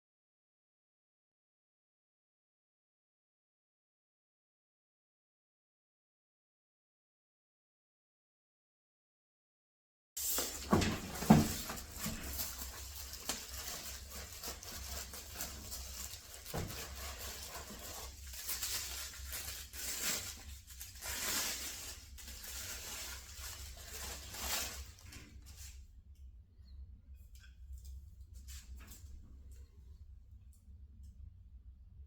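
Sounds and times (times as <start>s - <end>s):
packaging rustling and tearing: 10.2s - 25.8s.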